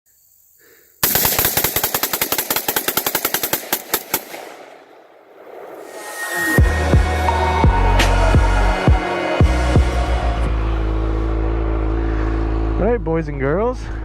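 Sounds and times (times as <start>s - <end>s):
rapid gunfire: 1.0s - 5.9s
music with a heavy beat: 6.5s - 10.4s.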